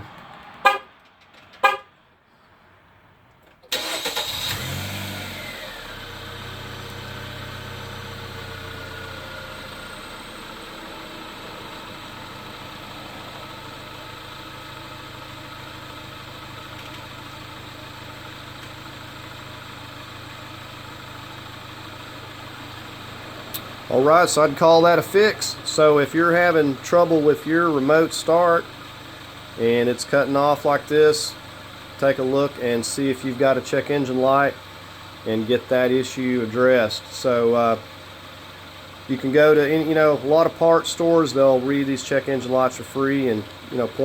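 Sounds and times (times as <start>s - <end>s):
car engine cranking and idling: 0.0s - 44.0s
car horn toot: 0.6s - 0.9s, 1.6s - 2.0s.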